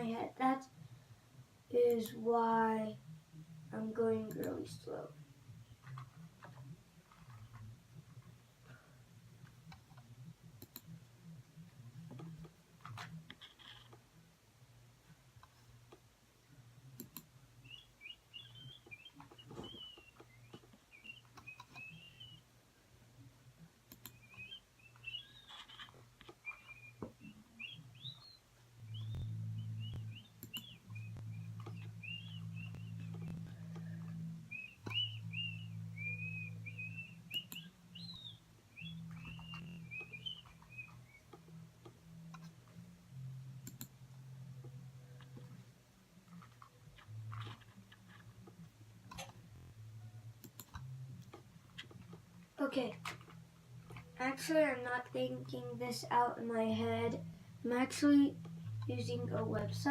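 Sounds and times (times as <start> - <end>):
bird chirping and twittering: 17.6 - 22.4, 24.1 - 41.6
faint clicks: 23.9 - 24.3, 30.4 - 30.8.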